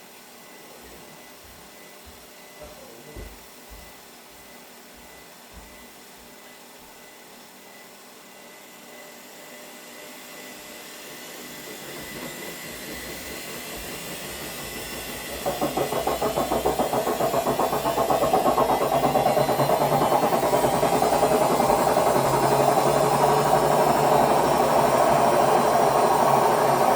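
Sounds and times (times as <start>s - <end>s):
washing machine running: 10.2s - 26.9s
washing machine drum spinning fast: 11.0s - 26.9s.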